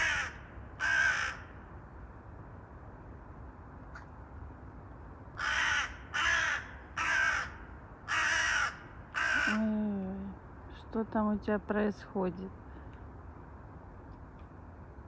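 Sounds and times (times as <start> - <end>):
crow cawing: 0.0 - 1.5, 5.4 - 9.7.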